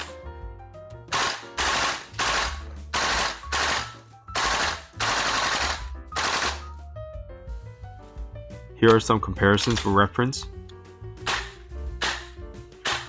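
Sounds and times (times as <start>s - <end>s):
background music: 0.0s - 13.0s
airsoft rifle firing bursts: 1.1s - 6.7s, 11.2s - 13.0s.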